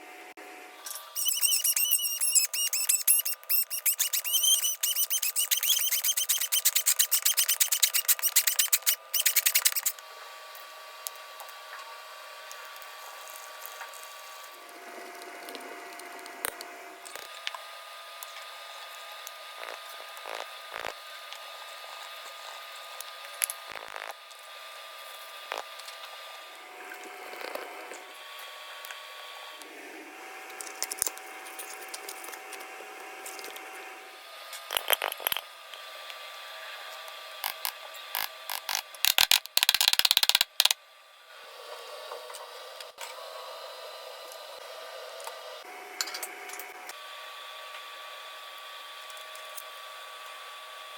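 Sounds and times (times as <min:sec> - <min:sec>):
small electric motor whirring: 0:00.9 - 0:10.1, 0:18.6 - 0:26.3, 0:37.1 - 0:40.8
loud fast rattle: 0:01.3 - 0:09.9.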